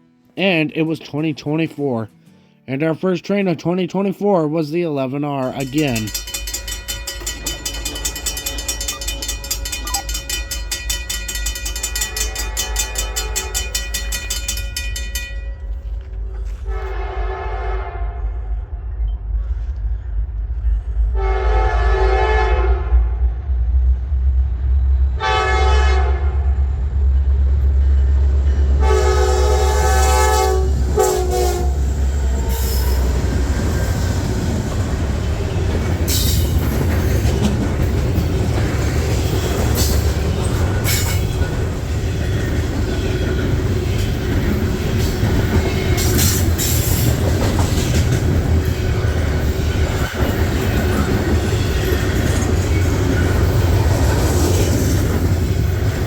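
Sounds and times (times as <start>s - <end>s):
train wheels clattering on rails: 5.5s - 16.6s, 30.7s - 56.0s
diesel locomotive rumble: 5.6s - 56.0s
train horn blasts: 12.0s - 13.7s, 16.5s - 18.6s, 21.1s - 23.3s, 25.2s - 26.6s, 28.8s - 33.2s.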